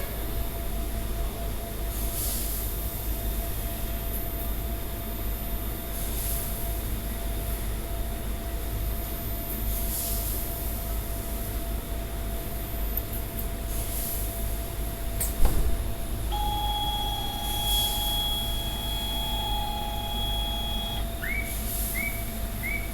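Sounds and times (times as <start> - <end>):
welding equipment hum and hiss: 16.1 - 21.6
steady electronic tone: 16.3 - 21.1.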